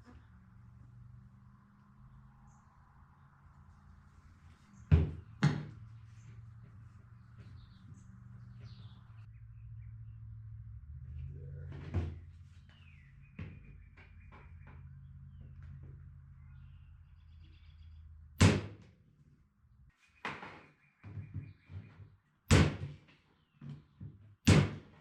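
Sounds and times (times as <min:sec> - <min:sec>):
nails hammered into wood: 0:18.4 - 0:18.9, 0:22.5 - 0:23.1, 0:24.5 - 0:25.0.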